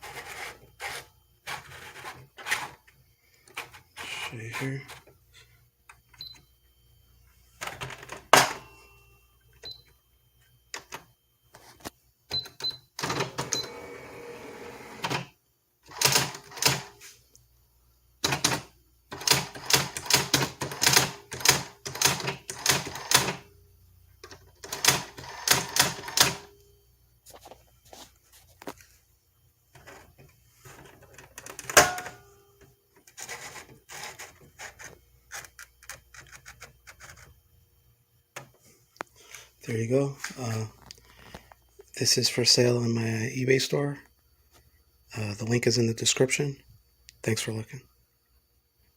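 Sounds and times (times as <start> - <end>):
typewriter strikes: 31.6 - 32.3.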